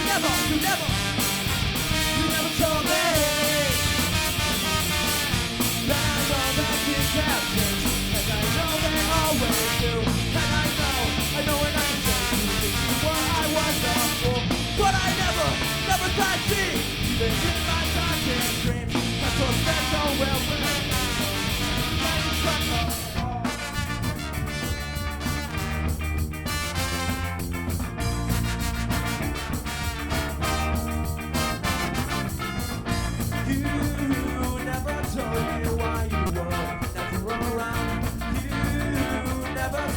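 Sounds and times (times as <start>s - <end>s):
live ska band playing: 0.0s - 39.9s.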